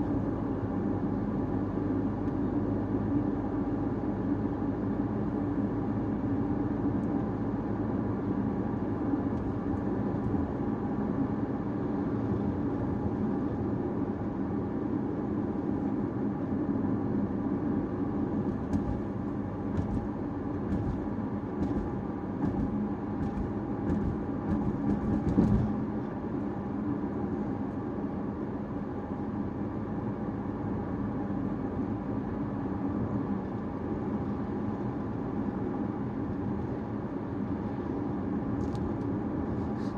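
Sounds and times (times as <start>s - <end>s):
car engine and tyre rumble: 0.0s - 39.9s
single thump: 18.5s - 20.1s, 20.7s - 25.8s.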